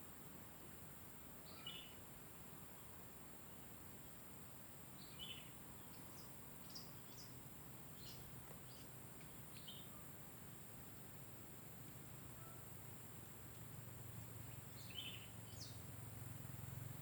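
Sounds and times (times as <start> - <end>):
faint steady high hiss: 0.0 - 17.0
small birds chirping: 1.4 - 2.0, 5.0 - 7.4, 8.0 - 10.0, 14.4 - 16.1.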